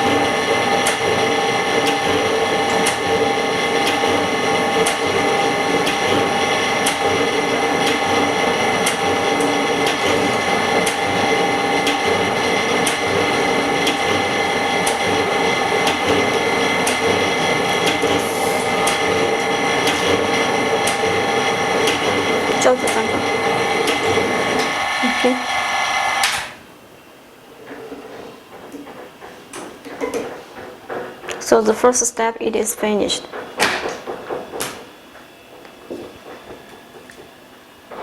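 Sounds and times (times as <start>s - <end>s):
machine humming: 0.0s - 38.0s.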